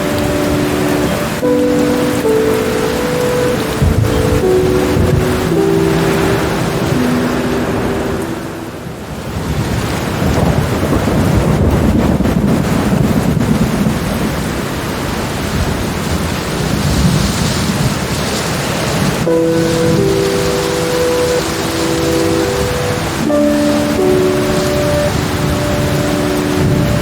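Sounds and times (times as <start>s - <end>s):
soft sustained music notes: 0.0s - 9.2s, 19.2s - 27.0s
rolling thunder: 0.0s - 27.0s
steady rain: 0.0s - 27.0s.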